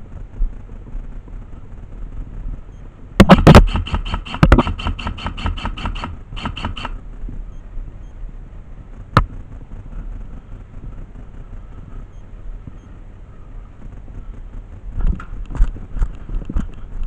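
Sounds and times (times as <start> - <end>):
wind rumble on microphone: 0.0 - 17.0
airsoft gun shots: 3.2 - 7.0.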